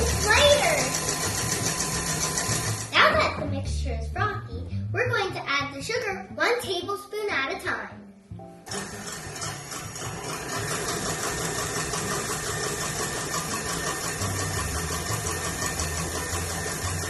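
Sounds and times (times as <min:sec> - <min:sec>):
electric mixer beating egg whites: 0:00.0 - 0:03.0, 0:08.7 - 0:17.0.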